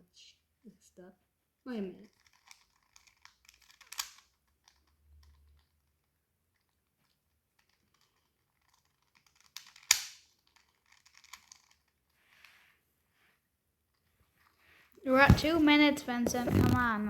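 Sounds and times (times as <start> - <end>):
puzzle cube plastic clicking: 2.1 - 12.0.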